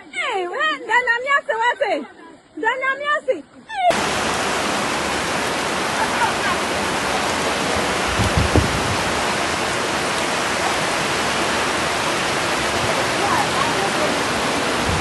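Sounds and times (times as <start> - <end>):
fast-flowing floodwater rushing: 2.4 - 15.0
dull low thumps: 7.6 - 10.0.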